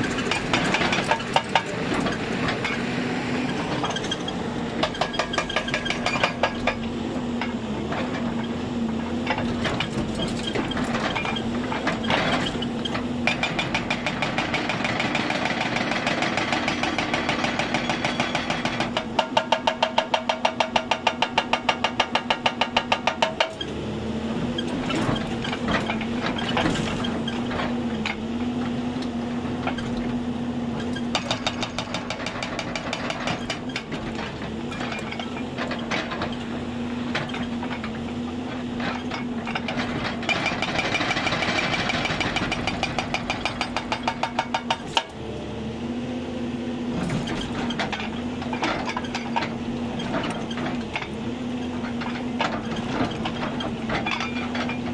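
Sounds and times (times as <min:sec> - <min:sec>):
hydraulic rock breaker hammering: 0:00.0 - 0:08.4, 0:09.2 - 0:23.8, 0:30.9 - 0:45.4, 0:47.0 - 0:54.9
excavator diesel engine: 0:00.0 - 0:54.9
steel clanking on rock: 0:51.8 - 0:54.9.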